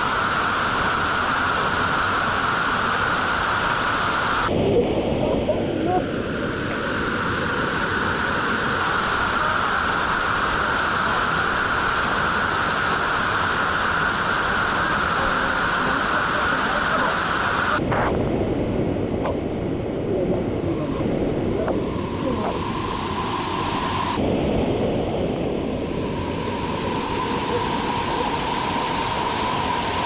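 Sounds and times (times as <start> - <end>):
waterfall rushing: 20.4 - 24.2, 25.3 - 30.0.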